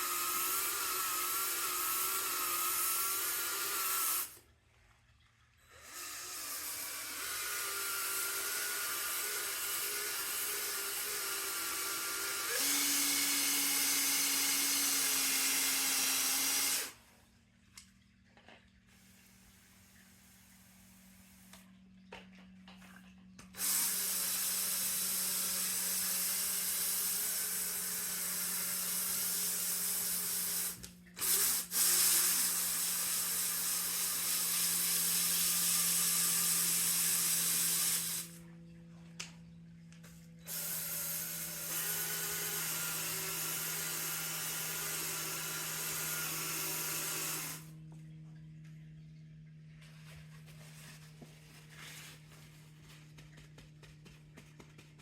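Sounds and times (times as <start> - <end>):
power drill scrub brush scrubbing: 0.0 - 4.4, 5.7 - 17.1, 23.6 - 38.4, 40.4 - 47.7.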